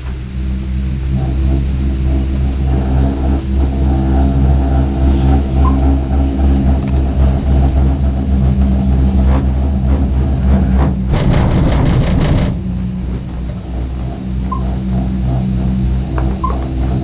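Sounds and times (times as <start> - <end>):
vehicle mechanical hum: 0.0 - 17.0
rapid rattling clatter: 7.1 - 17.0.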